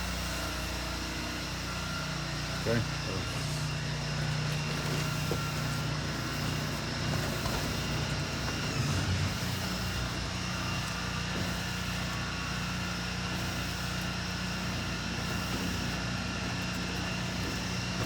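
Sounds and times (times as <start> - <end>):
engine humming: 0.0 - 18.0.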